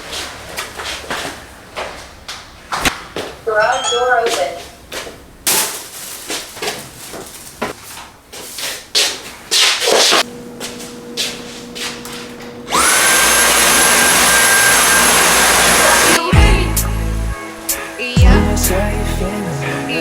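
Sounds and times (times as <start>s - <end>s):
electric motor whining: 10.3s - 16.2s.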